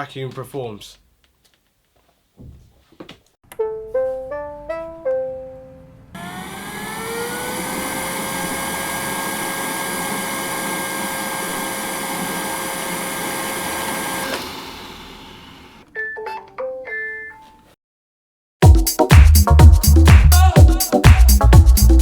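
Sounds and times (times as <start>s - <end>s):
keyboard notes: 3.5s - 6.2s
vacuum cleaner motor whirring: 6.2s - 15.9s.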